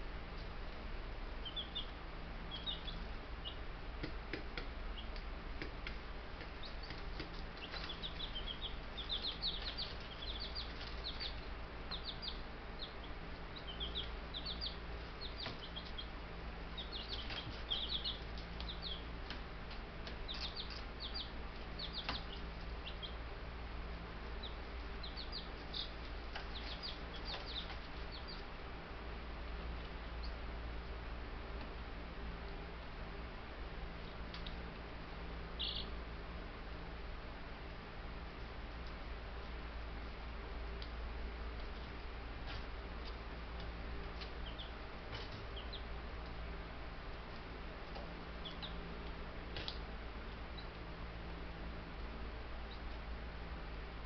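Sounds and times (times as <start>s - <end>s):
chicks peeping: 1.4s - 28.6s, 29.7s - 31.0s, 35.4s - 36.0s, 40.7s - 50.9s, 52.6s - 53.1s.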